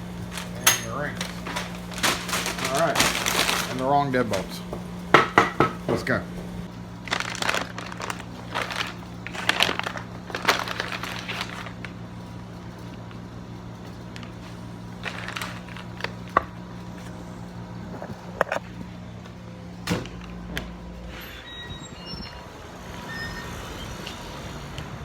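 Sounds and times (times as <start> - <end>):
packaging rustling: 0.2 - 4.5, 7.0 - 12.0, 15.0 - 16.2.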